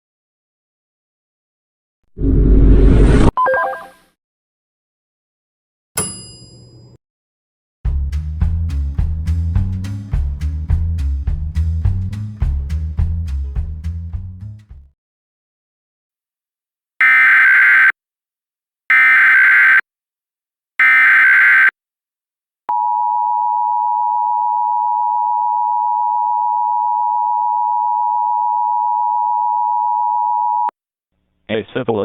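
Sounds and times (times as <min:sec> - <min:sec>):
digital header bursts: 0:17.0 - 0:17.9, 0:18.9 - 0:19.8, 0:20.8 - 0:21.7
two-tone attention signal: 0:17.0 - 0:17.9, 0:18.9 - 0:19.8, 0:20.8 - 0:21.7.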